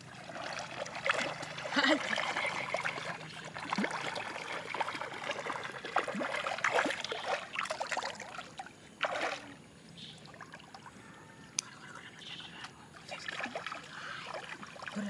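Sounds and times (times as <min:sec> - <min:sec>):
water splashing and trickling: 0:00.0 - 0:15.0
loud splash: 0:09.0 - 0:09.5.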